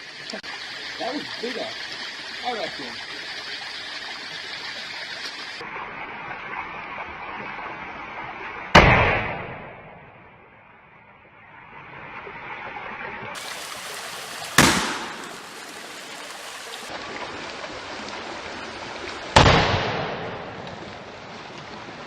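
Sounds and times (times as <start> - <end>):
aerosol cans bursting in fire: 13.4 - 15.8
creek rushing: 13.4 - 22.0.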